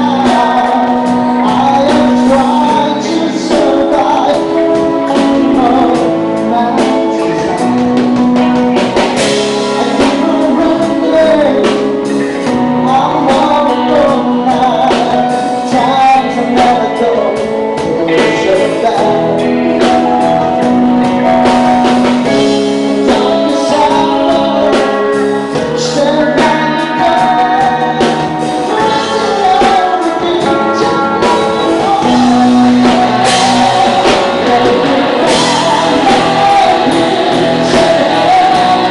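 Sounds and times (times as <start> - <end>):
drum kit: 0.0 - 38.9
electric guitar: 0.0 - 38.9
person singing: 0.0 - 38.9.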